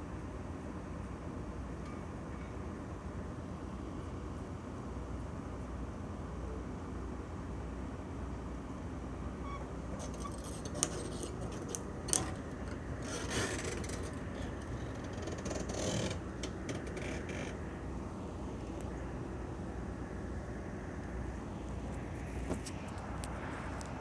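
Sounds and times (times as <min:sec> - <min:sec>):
low rumble of traffic: 0:00.0 - 0:24.0
scraping and clicking: 0:09.9 - 0:17.6.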